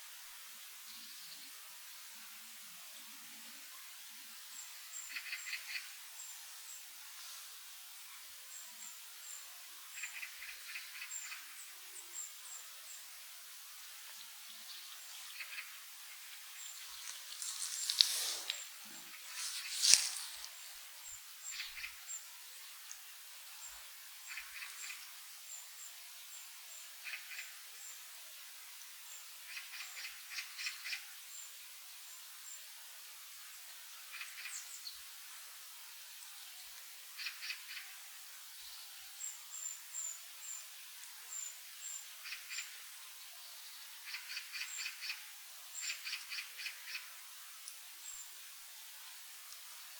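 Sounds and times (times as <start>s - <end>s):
small birds chipping: 13.8s - 28.0s.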